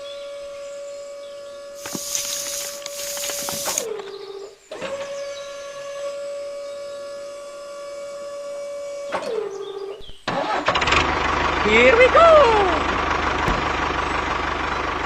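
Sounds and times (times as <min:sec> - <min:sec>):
small electric motor whining: 0:00.0 - 0:10.0.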